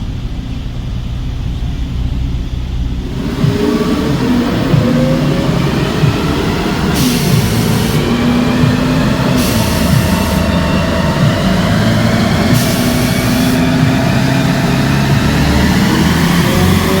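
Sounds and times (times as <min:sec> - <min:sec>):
car engine running hard: 0:00.0 - 0:17.0
bursts of hiss: 0:03.1 - 0:15.9.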